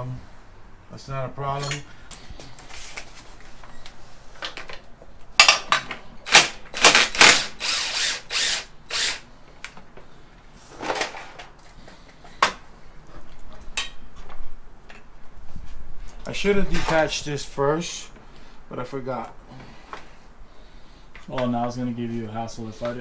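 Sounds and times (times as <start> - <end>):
loud mechanical tool bursts: 6.3 - 9.3.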